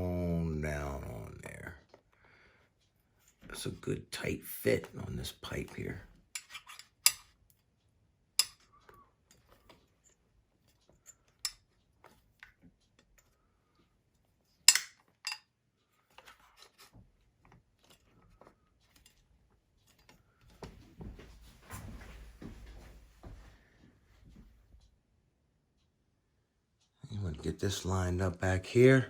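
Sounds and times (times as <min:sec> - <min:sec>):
metal parts and tools clinking: 0:06.3 - 0:07.3, 0:14.7 - 0:15.5
rustling of handling: 0:08.6 - 0:24.6.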